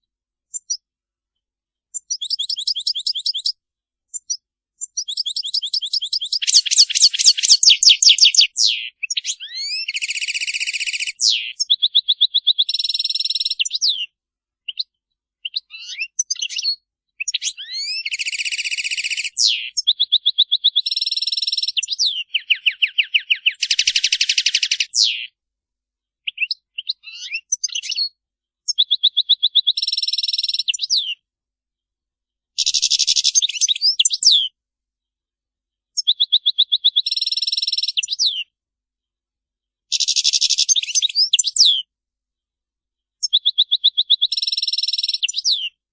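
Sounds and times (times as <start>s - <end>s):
finches twittering and trilling: 2.0s - 14.1s, 15.5s - 25.3s, 26.3s - 28.1s, 32.6s - 34.5s, 39.9s - 41.8s.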